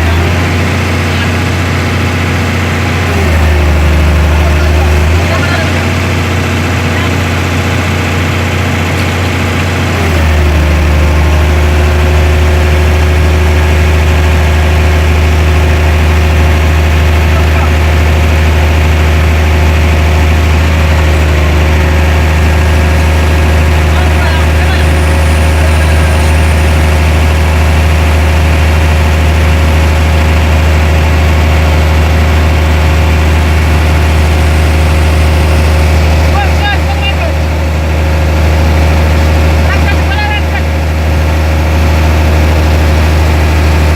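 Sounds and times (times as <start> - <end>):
heavy equipment engine humming: 0.0 - 43.9.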